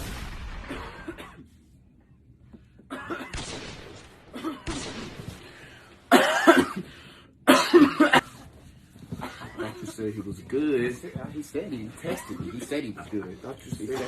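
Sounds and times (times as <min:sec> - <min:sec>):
person coughing: 0:00.7 - 0:01.6, 0:02.9 - 0:03.4, 0:04.3 - 0:04.7, 0:06.1 - 0:08.4.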